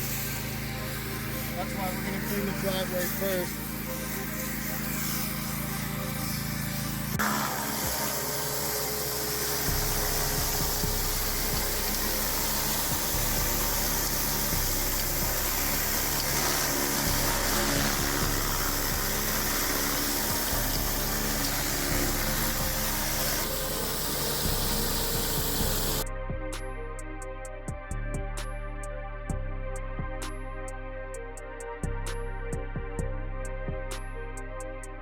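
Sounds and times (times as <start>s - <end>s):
pressure washer spraying concrete: 0.0s - 26.0s
background music: 0.0s - 35.0s.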